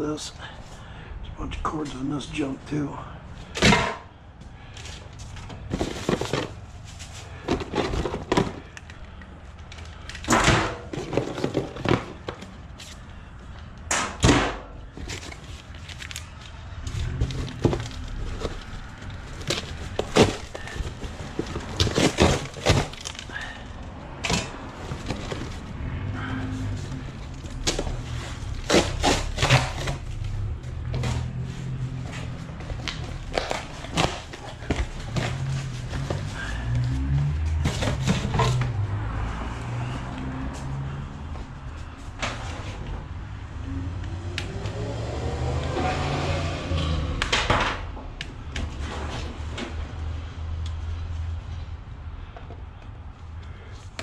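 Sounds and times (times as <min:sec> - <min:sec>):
scrap clunking and clattering: 0:04.8 - 0:08.8, 0:09.7 - 0:12.6, 0:16.8 - 0:36.8, 0:37.4 - 0:38.8.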